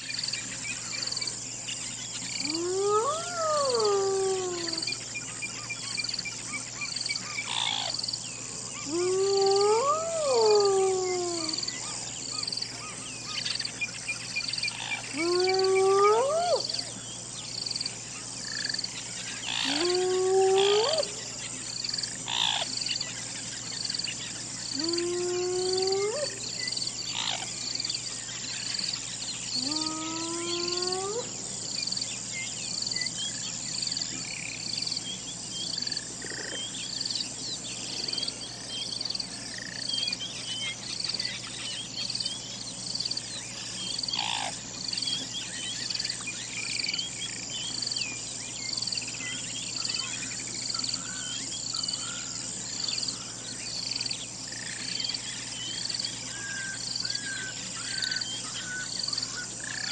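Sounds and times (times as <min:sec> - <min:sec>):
birdsong: 0:00.0 - 0:59.9
crickets chirping: 0:00.0 - 0:59.9
hyena howl: 0:02.4 - 0:05.0, 0:08.8 - 0:12.0, 0:15.1 - 0:16.9, 0:19.4 - 0:21.2, 0:24.7 - 0:26.4, 0:29.6 - 0:31.3.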